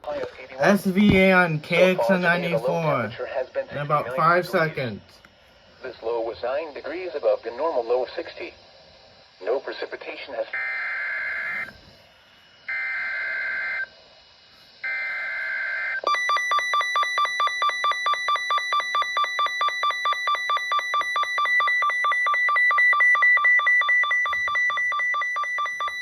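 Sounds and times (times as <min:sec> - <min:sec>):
buzzy data bursts: 0:00.6 - 0:03.2, 0:03.8 - 0:05.2.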